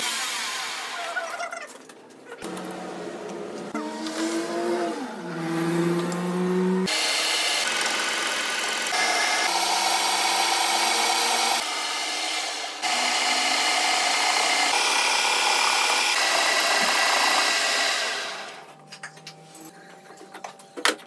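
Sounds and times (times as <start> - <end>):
power tools cutting steel: 2.5 - 18.6.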